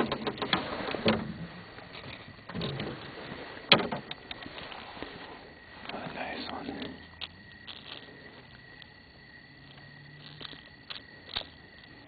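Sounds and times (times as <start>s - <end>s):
sharp knocks and clatters: 0.0s - 1.3s, 3.7s - 4.2s
rustling: 3.9s - 12.0s.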